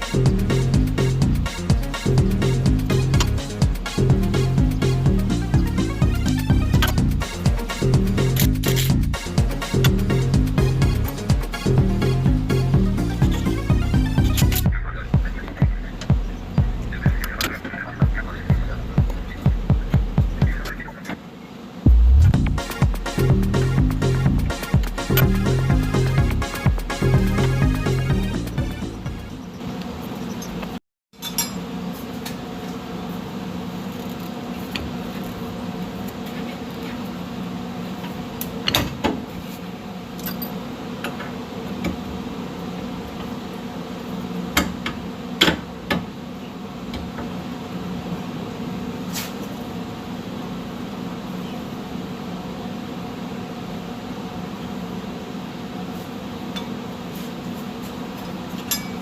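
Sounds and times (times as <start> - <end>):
steady machine hum: 0.0 - 59.0
sharp metallic clanks: 58.6 - 59.0.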